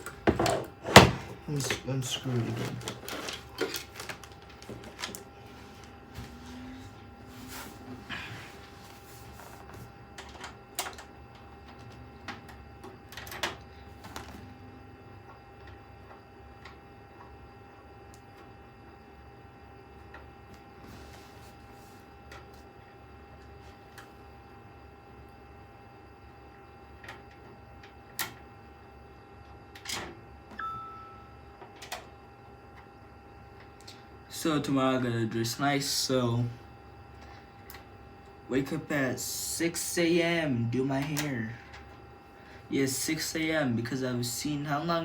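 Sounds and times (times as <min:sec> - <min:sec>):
short ringing tone: 0:30.6 - 0:31.5.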